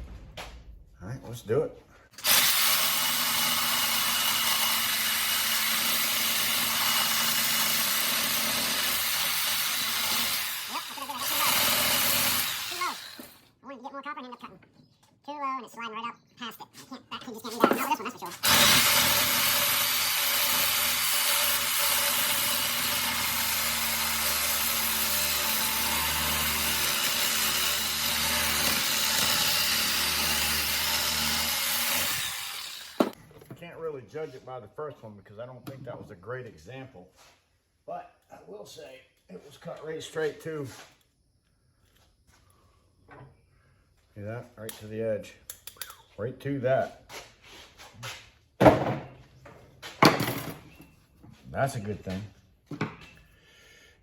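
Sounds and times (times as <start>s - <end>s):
power cutting tool running: 2.2s - 13.4s, 18.4s - 33.2s.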